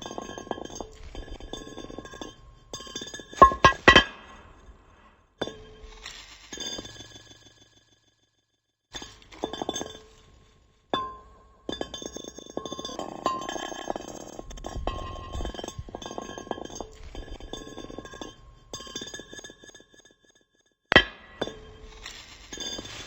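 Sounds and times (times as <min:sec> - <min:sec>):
glass clinking and ringing: 0:03.4 - 0:04.4, 0:20.9 - 0:21.7.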